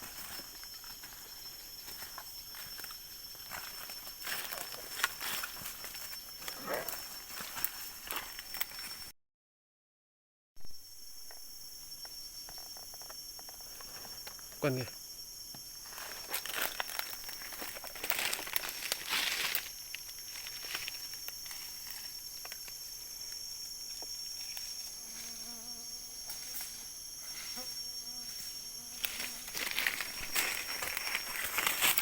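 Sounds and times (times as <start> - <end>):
rustling through undergrowth: 0.0 - 9.0, 15.8 - 22.9, 29.0 - 32.0
insects droning: 0.0 - 9.1, 10.6 - 32.0.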